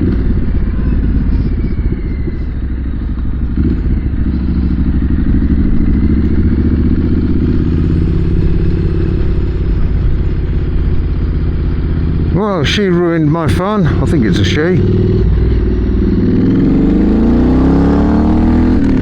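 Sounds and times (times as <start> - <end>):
wind noise: 0.0 - 12.1
motorcycle engine running: 0.0 - 19.0.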